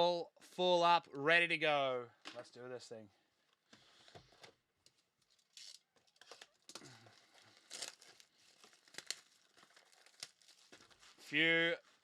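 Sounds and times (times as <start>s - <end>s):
plastic packaging crinkling: 4.9s - 12.0s.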